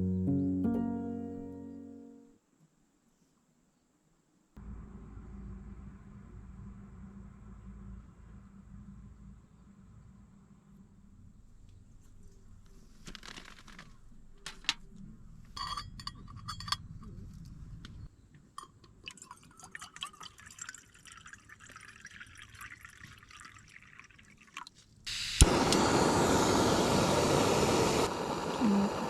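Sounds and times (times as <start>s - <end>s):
cookware clinking: 15.6s - 17.2s
water pouring into a pot: 19.0s - 25.6s.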